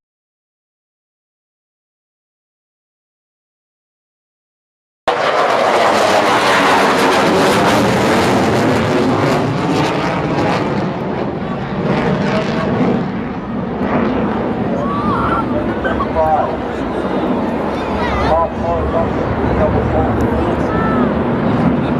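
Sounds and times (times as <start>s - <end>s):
aeroplane engine flying past: 5.1s - 21.9s.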